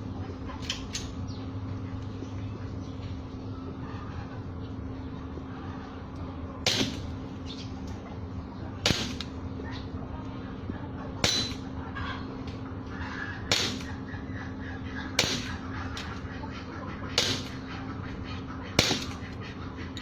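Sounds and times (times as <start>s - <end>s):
airsoft pistol shots: 6.7s - 7.1s, 8.8s - 9.3s, 13.5s - 14.0s, 15.2s - 15.6s, 17.2s - 17.6s, 18.8s - 19.2s.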